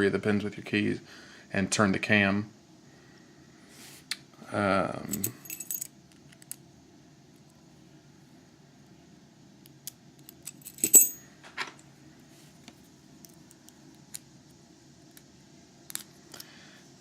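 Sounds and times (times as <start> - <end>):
metal parts clicking and clinking: 5.1 - 6.6, 10.2 - 11.7
sharp ringing metal clink: 10.8 - 11.2.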